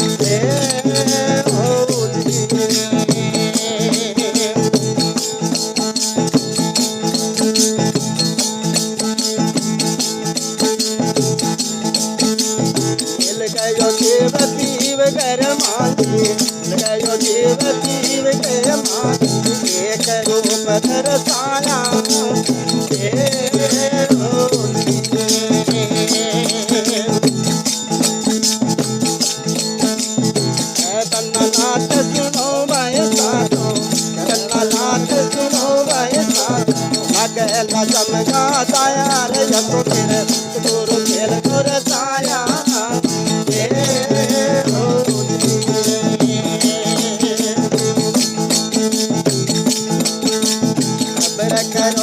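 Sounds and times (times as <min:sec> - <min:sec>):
jingling hand percussion: 0:00.0 - 0:52.0.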